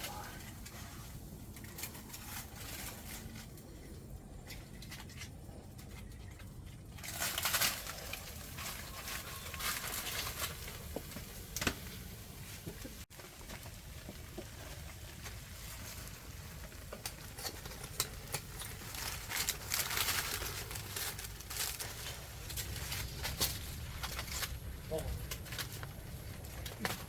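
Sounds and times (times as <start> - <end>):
crinkling and rustling handling: 0.0 - 27.0.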